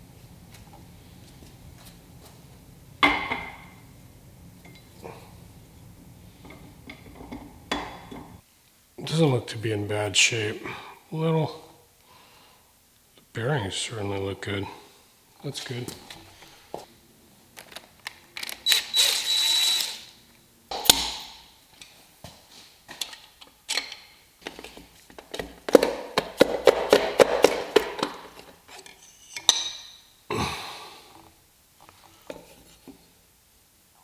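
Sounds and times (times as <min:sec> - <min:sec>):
hand tools knocking: 0:00.5 - 0:08.4, 0:24.5 - 0:28.6.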